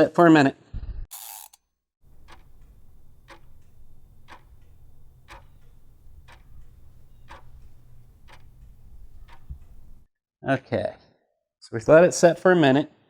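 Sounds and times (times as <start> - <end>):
faint low hum: 2.0 - 10.0
clock ticking: 2.0 - 10.1.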